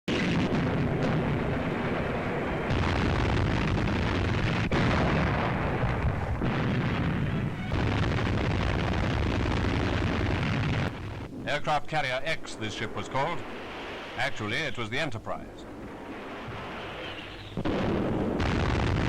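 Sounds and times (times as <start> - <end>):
explosions and gunfire rumble: 0.1 - 14.8, 15.7 - 19.0.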